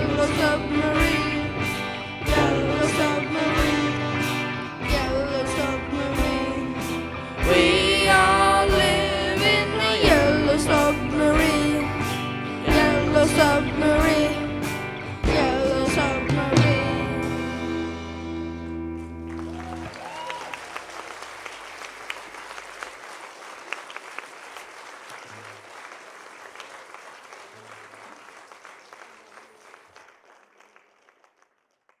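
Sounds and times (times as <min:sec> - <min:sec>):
rock band final chord: 0:00.0 - 0:19.9
audience applauding: 0:19.0 - 0:32.0.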